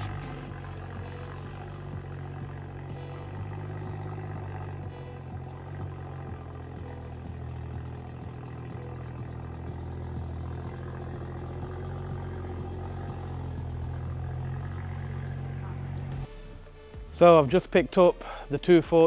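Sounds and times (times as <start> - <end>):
car engine running: 0.0 - 17.3.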